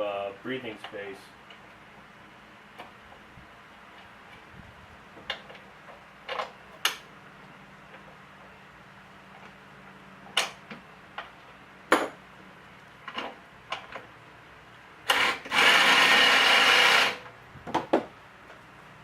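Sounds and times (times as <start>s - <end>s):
loud steady noise: 15.0s - 17.3s.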